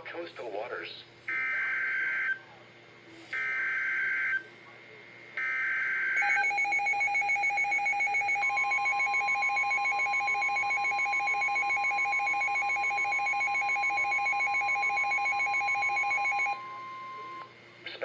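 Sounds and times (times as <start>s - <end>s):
steady warning alarm tone: 1.3s - 2.5s, 3.2s - 4.6s, 5.3s - 17.5s
fast-pulsing alarm beep: 3.4s - 4.4s, 5.4s - 17.4s.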